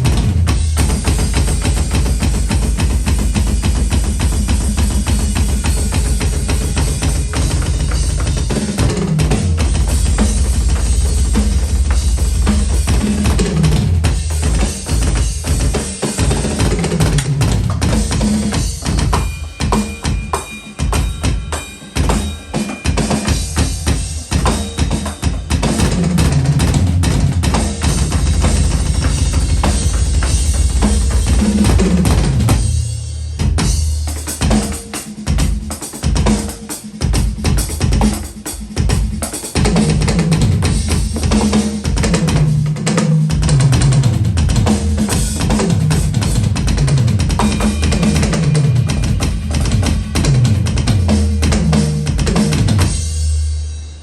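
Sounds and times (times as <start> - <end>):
electronic drum kit groove: 0.0 - 54.0
low sliding bass tones: 9.2 - 14.5, 26.5 - 33.7.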